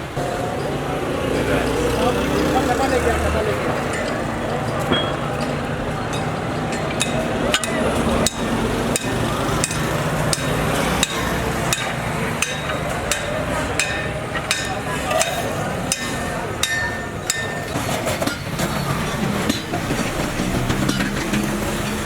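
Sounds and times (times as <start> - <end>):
hammer striking metal: 3.8 - 22.0.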